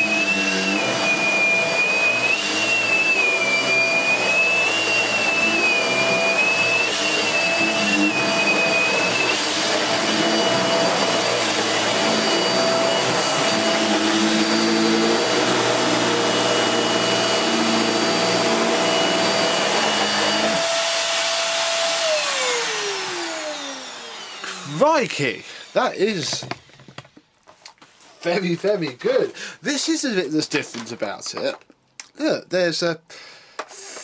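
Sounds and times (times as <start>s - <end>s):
vacuum cleaner motor whine: 0.0s - 25.0s.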